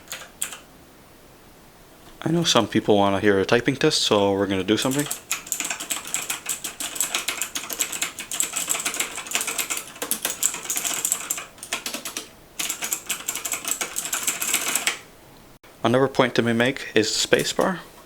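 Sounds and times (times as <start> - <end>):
fast mechanical keyboard typing: 0.0 - 0.6, 4.7 - 15.0.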